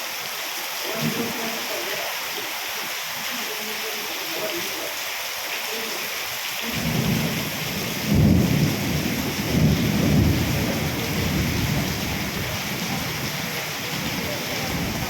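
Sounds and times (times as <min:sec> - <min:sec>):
heavy rain: 0:00.0 - 0:15.0
thunder rumbling: 0:06.7 - 0:13.2.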